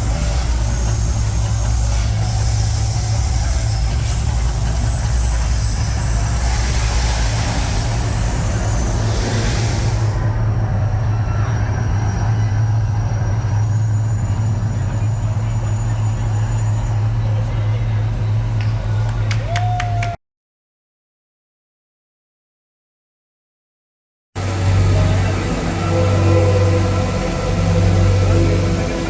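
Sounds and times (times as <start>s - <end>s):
hiss: 0.0s - 10.4s
deep rumble: 0.0s - 19.3s, 24.4s - 29.0s.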